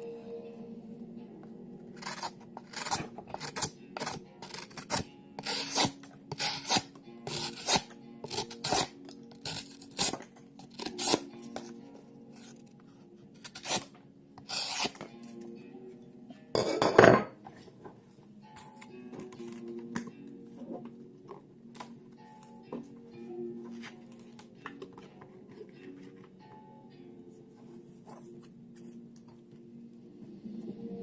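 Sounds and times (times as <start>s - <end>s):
background music: 0.0s - 31.0s
knife scraping hard surface: 2.0s - 11.8s, 13.4s - 15.1s.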